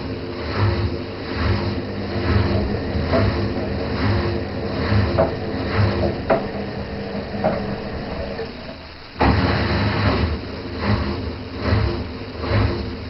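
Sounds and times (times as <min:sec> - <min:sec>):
washing machine running: 0:00.0 - 0:13.0.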